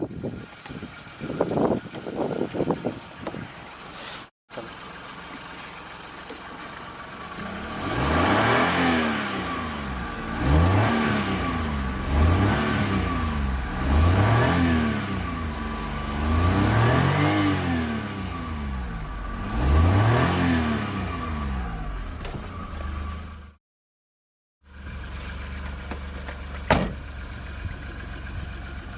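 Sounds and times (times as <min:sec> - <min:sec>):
car engine revving: 0:07.3 - 0:22.0.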